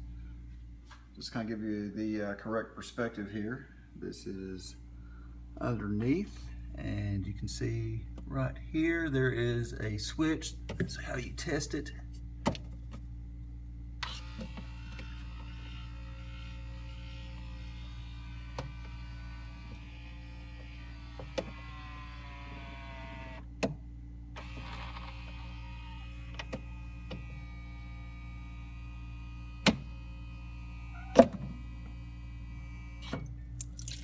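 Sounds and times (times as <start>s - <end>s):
ice maker motor whine: 14.0s - 23.6s, 24.3s - 34.0s.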